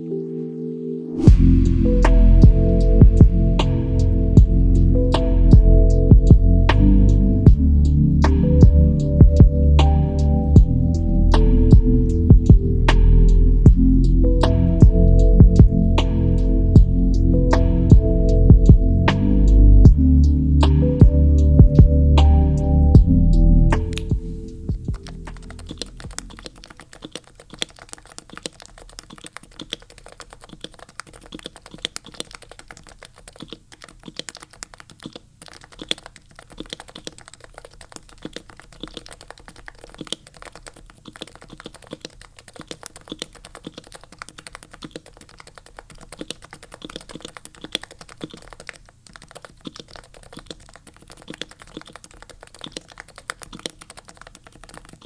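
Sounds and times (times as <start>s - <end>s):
short musical tail: 1.2s - 3.7s
fast typing on keyboard: 23.8s - 55.0s.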